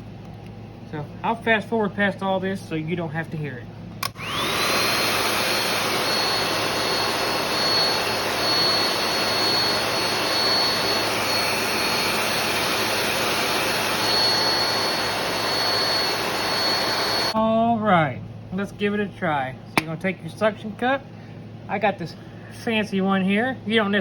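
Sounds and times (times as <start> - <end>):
hair dryer blowing: 4.0 - 17.4.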